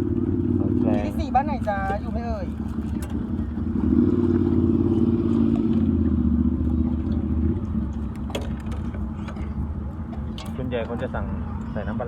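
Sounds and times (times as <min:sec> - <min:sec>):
vehicle engine running: 0:00.0 - 0:10.4.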